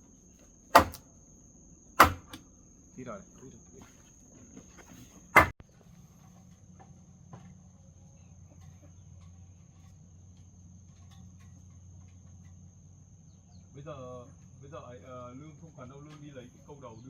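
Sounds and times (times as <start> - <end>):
crickets trilling: 0.0 - 17.0
sharp knock: 0.7 - 1.0, 2.0 - 2.4, 5.4 - 5.6.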